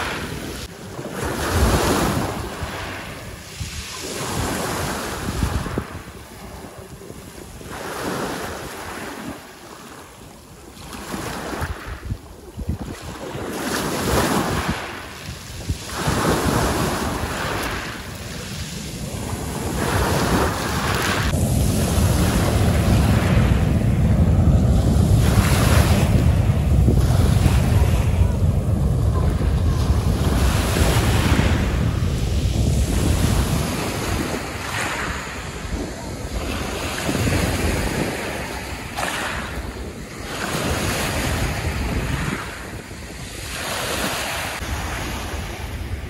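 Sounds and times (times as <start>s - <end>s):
wind buffeting microphone: 0.0s - 9.6s, 10.4s - 46.0s
sea waves breaking on shore: 0.0s - 46.0s.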